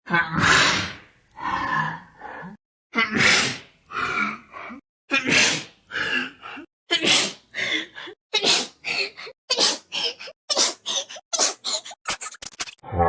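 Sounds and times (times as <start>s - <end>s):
woman sneezing: 8.4s - 8.8s, 10.5s - 12.0s.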